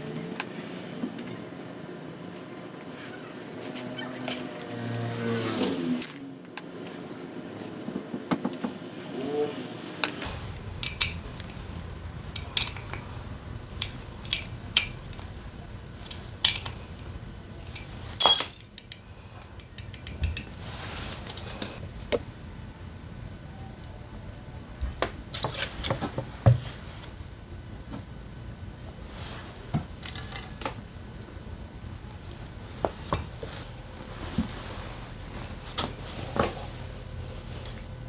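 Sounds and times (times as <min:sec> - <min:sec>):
metal tools clinking and clattering: 0:17.7 - 0:18.8.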